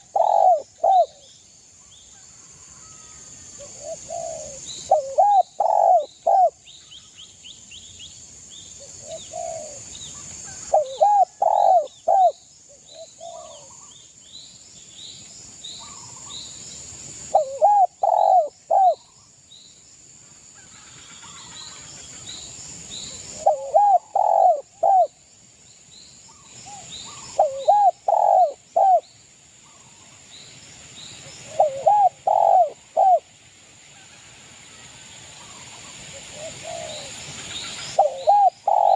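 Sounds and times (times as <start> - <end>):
dove cooing: 0.0 - 1.3, 3.7 - 6.6, 9.0 - 9.9, 10.6 - 12.4, 13.0 - 13.8, 17.3 - 19.0, 23.3 - 25.2, 27.1 - 29.1, 31.4 - 33.3, 36.2 - 37.1, 38.0 - 38.9
small birds chirping: 3.7 - 16.6, 21.2 - 33.2, 35.4 - 38.9.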